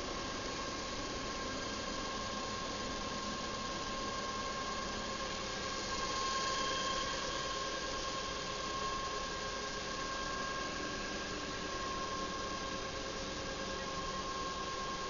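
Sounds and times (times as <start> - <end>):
machine hissing with high whine: 0.0 - 15.0.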